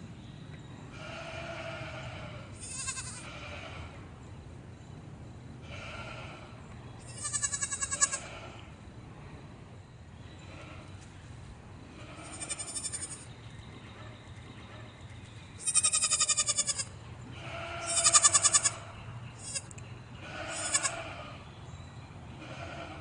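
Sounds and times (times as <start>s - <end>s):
goats bleating: 1.0s - 3.7s, 7.1s - 8.5s, 15.6s - 18.8s, 19.4s - 21.3s.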